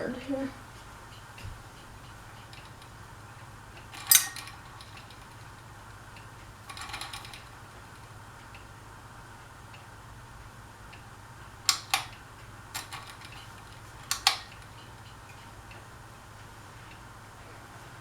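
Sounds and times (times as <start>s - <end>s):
ceiling fan humming: 0.0s - 18.0s
rattle of clicks: 1.1s - 8.8s, 10.9s - 15.9s.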